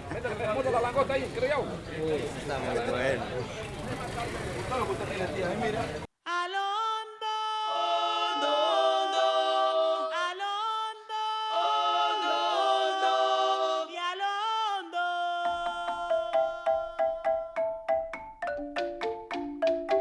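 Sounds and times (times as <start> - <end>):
group singing a cappella: 6.3 - 17.2.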